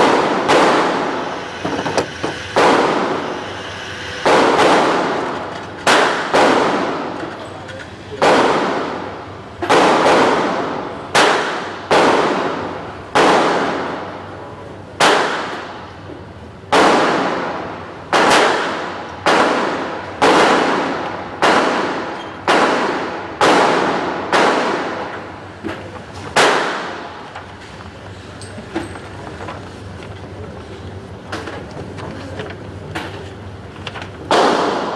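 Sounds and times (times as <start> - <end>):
handgun shots with echo: 0.0 - 1.1, 18.1 - 25.0, 26.4 - 27.0, 34.3 - 34.9.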